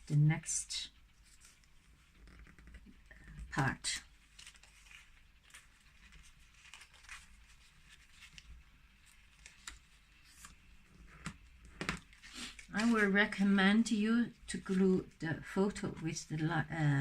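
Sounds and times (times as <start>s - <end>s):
paper taps and rustles: 8.2s - 13.1s.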